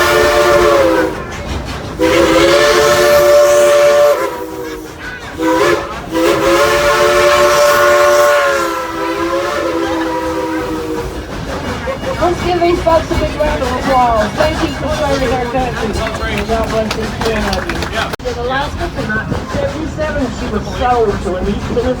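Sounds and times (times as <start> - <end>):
steam locomotive whistle blasts: 0.0 - 1.4, 2.0 - 11.2.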